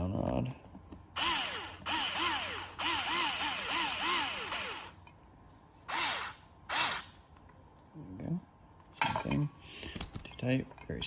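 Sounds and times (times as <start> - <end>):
drill motor whine: 1.2 - 5.0, 5.9 - 7.1.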